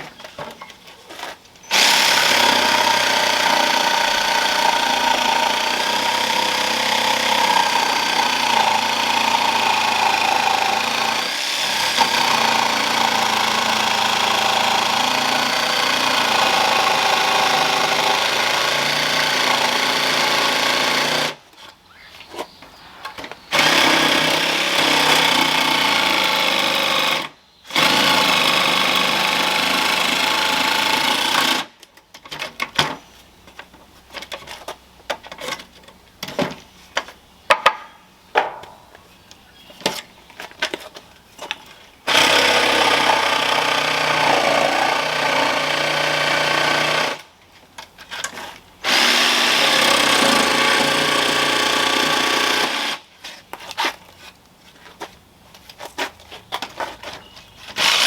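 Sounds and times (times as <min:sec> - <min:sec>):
jigsaw cutting through wood: 0:01.7 - 0:21.4, 0:23.5 - 0:31.7, 0:42.0 - 0:47.3, 0:48.8 - 0:53.0, 0:57.8 - 0:58.0.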